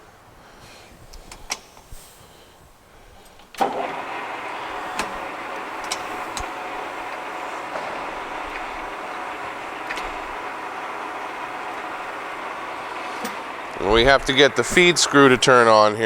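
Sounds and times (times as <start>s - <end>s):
lathe starting with clunk: 3.5s - 15.6s
lathe running: 3.5s - 16.0s
lathe lever clicks: 4.8s - 8.7s.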